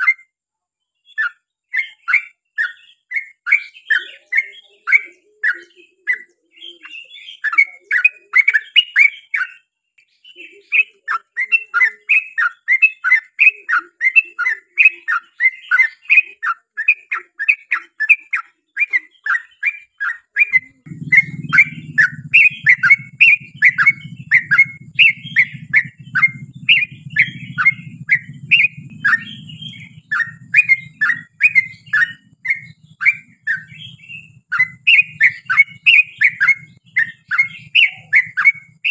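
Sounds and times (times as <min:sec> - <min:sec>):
bird singing bubbly chirps: 0:01.1 - 0:38.9
low steady hum: 0:20.8 - 0:38.8.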